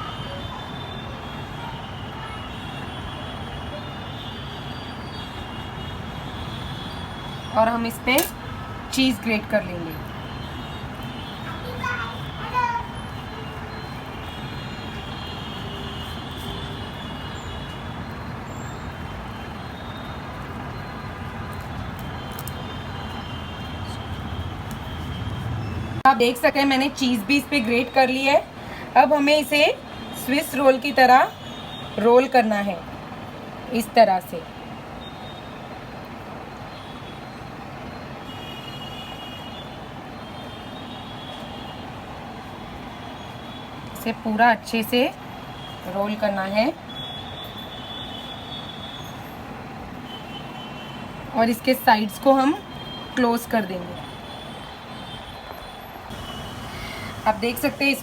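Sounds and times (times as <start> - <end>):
road traffic rumble: 0.0 - 36.7, 55.4 - 58.0.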